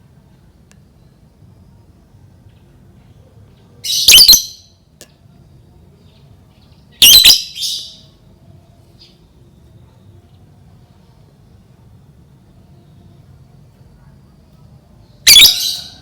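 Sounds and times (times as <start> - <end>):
lovebird squawking: 3.9 - 4.6, 7.0 - 8.0, 15.3 - 16.0.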